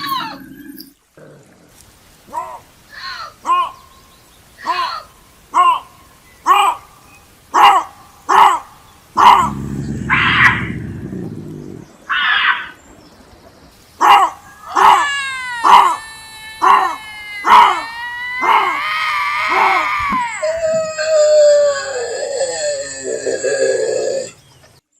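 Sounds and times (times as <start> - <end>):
bobcat screaming cries: 9.2 - 11.1, 14.0 - 23.4.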